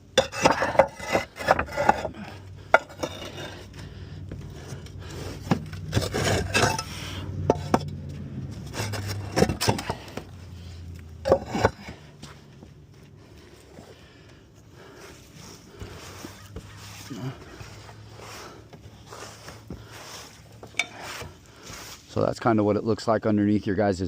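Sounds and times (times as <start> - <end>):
roof tiles knocking and clinking: 0.0 - 3.8, 4.4 - 8.0, 8.6 - 10.4, 11.2 - 12.4
scraping and rubbing: 0.2 - 12.5, 14.9 - 22.1.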